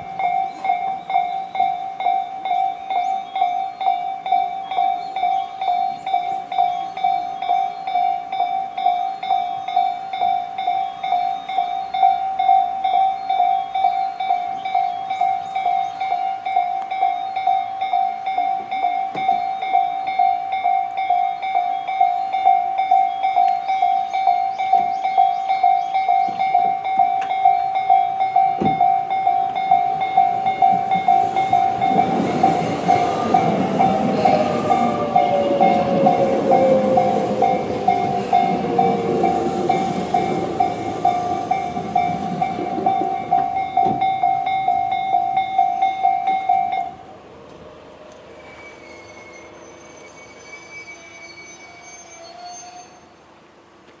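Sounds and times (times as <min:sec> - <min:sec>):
level crossing bell ringing: 0:00.0 - 0:47.1
train wheels rumbling and rattling: 0:00.0 - 0:52.3
train motor whine: 0:26.3 - 0:54.0.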